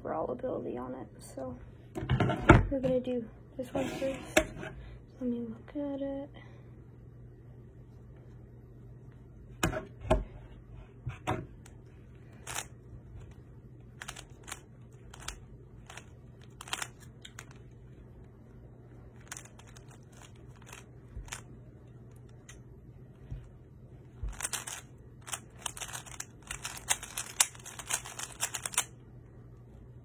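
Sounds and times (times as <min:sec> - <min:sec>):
puzzle cube plastic clicking: 0:13.9 - 0:17.7, 0:24.3 - 0:28.9.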